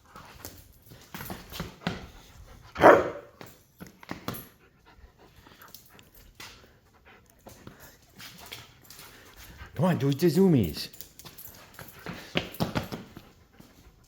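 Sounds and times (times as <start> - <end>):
dog panting: 0.0 - 10.5, 11.2 - 14.0
dog barking: 2.8 - 3.4.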